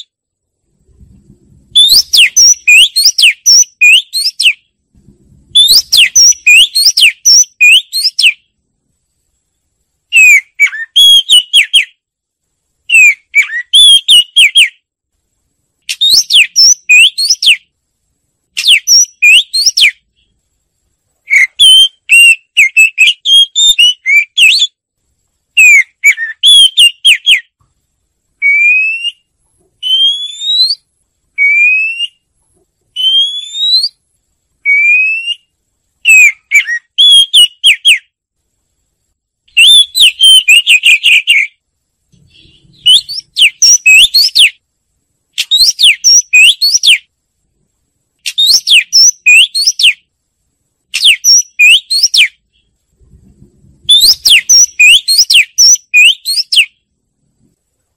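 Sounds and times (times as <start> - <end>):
bird singing whistled notes: 1.7 - 4.7, 5.5 - 8.5, 10.1 - 12.0, 12.9 - 14.8, 15.9 - 17.7, 18.5 - 20.3, 21.3 - 24.8, 25.6 - 27.6, 28.4 - 32.3, 32.9 - 34.0, 34.7 - 38.1, 39.5 - 41.6, 42.2 - 44.6, 45.4 - 47.1, 48.2 - 50.1, 51.0 - 52.7, 53.9 - 56.8.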